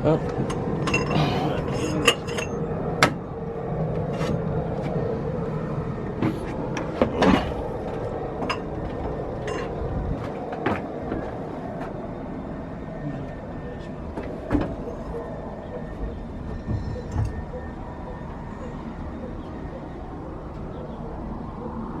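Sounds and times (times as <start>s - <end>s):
mechanical hum: 0.0s - 22.0s
metal clinks of hand tools: 0.5s - 2.6s, 9.4s - 9.7s.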